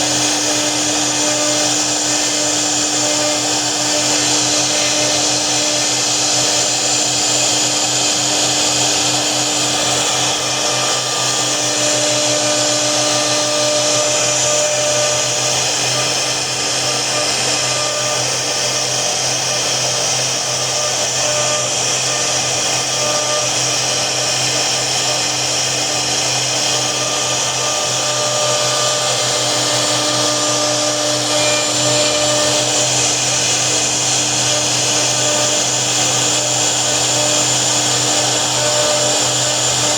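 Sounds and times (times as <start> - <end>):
router spindle running: 0.0 - 39.9
high-pitched whine: 24.9 - 39.9.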